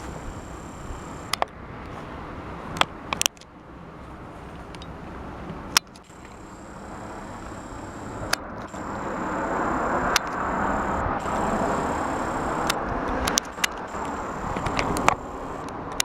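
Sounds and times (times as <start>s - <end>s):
sharp clicks: 0.0s - 1.6s, 2.8s - 3.5s, 5.7s - 16.0s.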